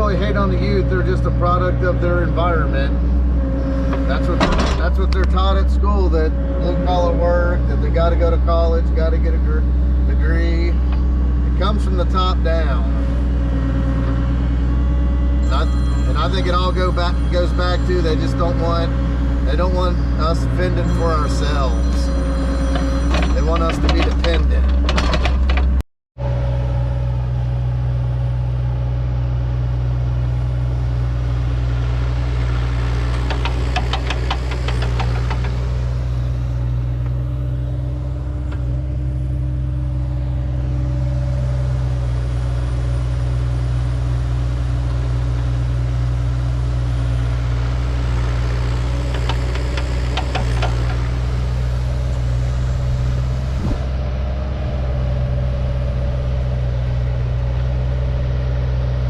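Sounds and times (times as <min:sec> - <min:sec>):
diesel engine humming: 0:00.0 - 0:59.0
rapid clattering: 0:33.0 - 0:35.9.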